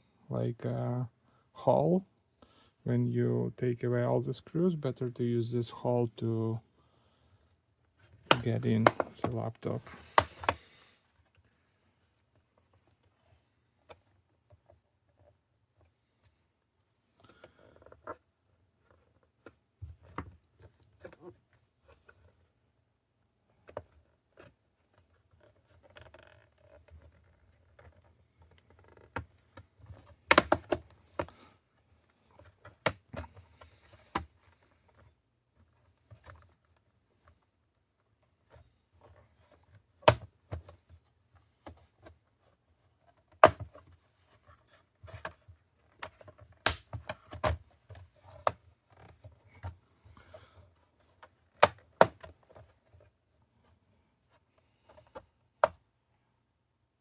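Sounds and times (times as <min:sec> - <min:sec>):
plastic case scraping and handling: 0:08.1 - 0:10.7.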